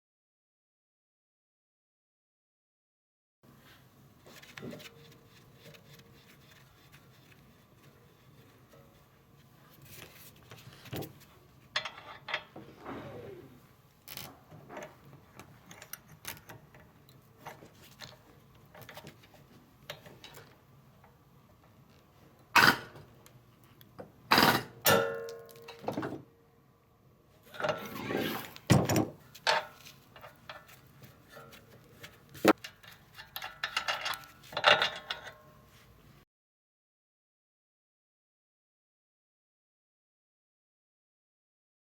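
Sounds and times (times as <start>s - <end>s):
metal parts clicking and clinking: 28.7s - 35.4s.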